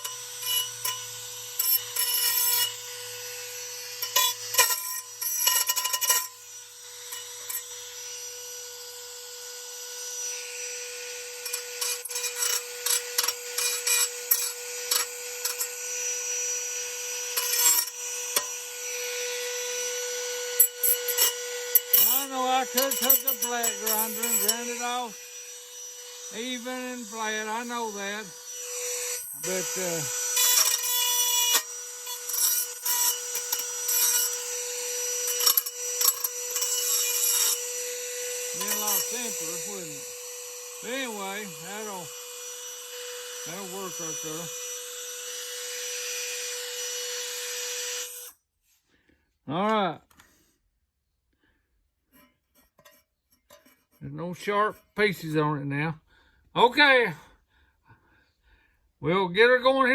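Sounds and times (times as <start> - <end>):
electric grinder whining: 0.0 - 48.4
grinder rasping on metal: 0.0 - 48.4, 52.1 - 55.4
ticks and scrapes: 20.6 - 25.0, 52.1 - 55.1.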